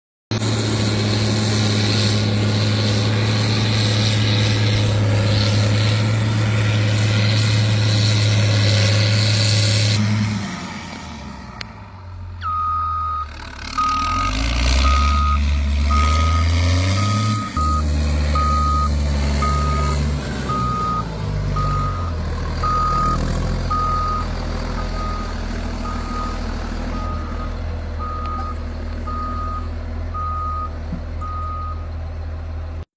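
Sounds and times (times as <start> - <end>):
heavy engine running: 0.3 - 32.9
reversing alarm beeping: 12.4 - 31.9.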